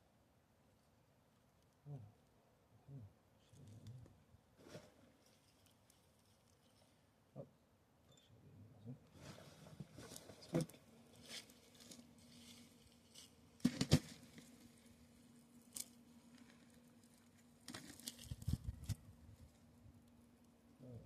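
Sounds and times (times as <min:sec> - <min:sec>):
hands digging in dry soil: 0:09.2 - 0:15.0, 0:15.6 - 0:19.6.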